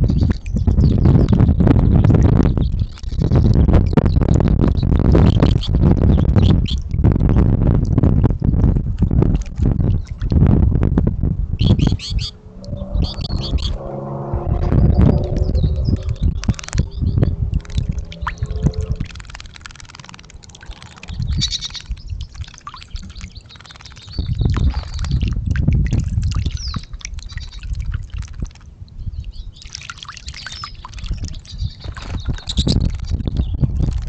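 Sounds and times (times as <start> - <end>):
low rumbling bursts: 8.0 - 22.6
water dripping: 15.2 - 28.6
birds splashing in water: 19.0 - 28.7, 29.3 - 33.1.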